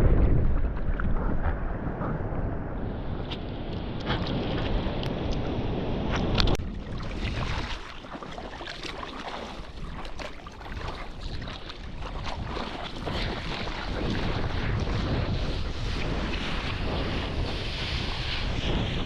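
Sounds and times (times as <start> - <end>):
wind buffeting microphone: 0.0 - 8.1, 9.3 - 19.0
surf: 0.0 - 19.0
water splashing: 3.0 - 18.0.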